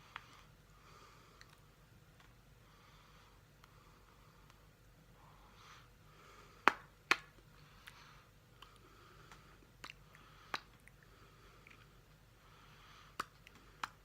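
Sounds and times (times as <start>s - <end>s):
lips smacking: 8.6s - 12.0s, 13.1s - 14.0s.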